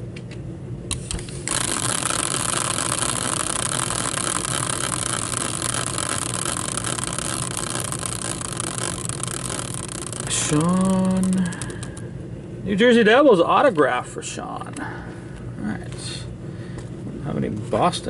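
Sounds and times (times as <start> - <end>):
prize wheel ticking: 1.5 - 12.0.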